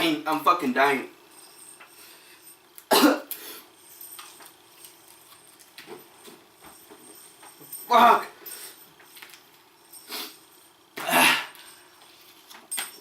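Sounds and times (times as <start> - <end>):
man coughing: 2.9 - 3.3, 11.0 - 11.6.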